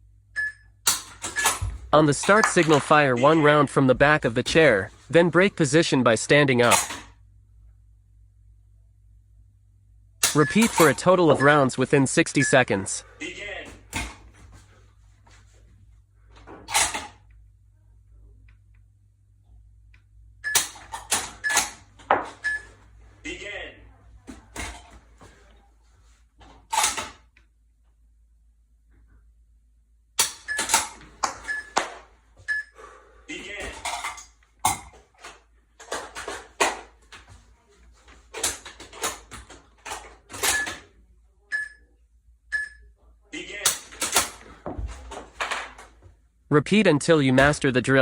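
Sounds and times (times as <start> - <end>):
metallic clacks of rifle handling: 6.6 - 7.1, 26.4 - 27.2, 30.2 - 32.1, 33.6 - 37.4, 38.3 - 40.8, 43.6 - 46.0
electronic timer beep: 10.4 - 10.6, 20.4 - 20.7, 32.5 - 32.8, 41.5 - 41.8, 42.5 - 42.9
rifle clicks and rattles: 38.3 - 40.8, 43.7 - 46.0.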